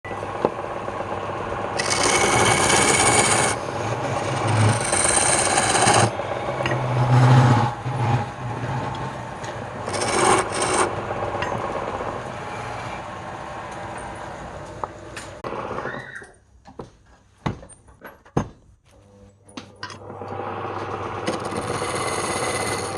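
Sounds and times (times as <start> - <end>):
lathe humming: 0.1 - 15.5, 19.9 - 22.9
turning tool scraping wood: 1.8 - 12.9, 20.0 - 22.9.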